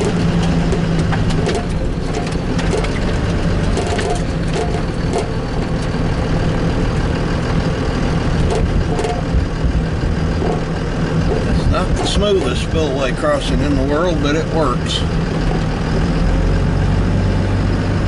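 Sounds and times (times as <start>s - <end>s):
knocks and rattles: 0.0s - 13.1s
truck engine hum: 0.0s - 18.0s.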